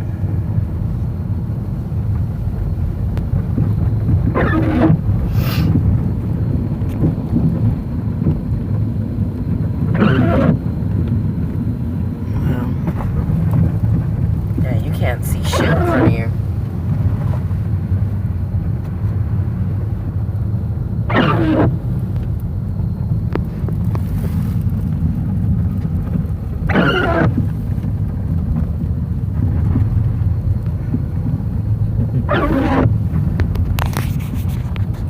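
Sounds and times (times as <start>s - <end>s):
vehicle driving off-road: 0.0s - 35.0s.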